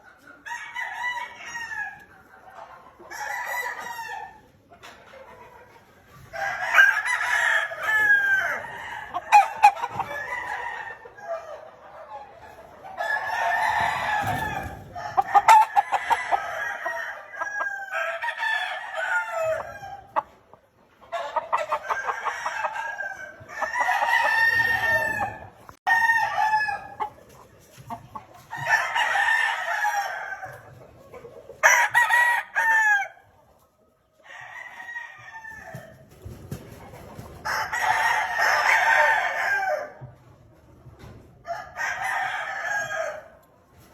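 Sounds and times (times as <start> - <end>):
roosters crowing: 0.4 - 2.1, 3.1 - 4.4, 6.2 - 11.7, 12.8 - 20.3, 21.1 - 27.2, 28.4 - 30.8, 31.6 - 33.2, 34.2 - 36.0, 37.4 - 40.1, 41.4 - 43.4.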